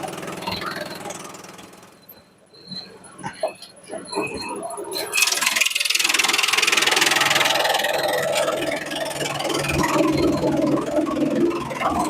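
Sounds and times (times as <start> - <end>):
shredder engine running: 0.0 - 2.0, 5.2 - 12.0
rattle of shredding: 4.1 - 12.0.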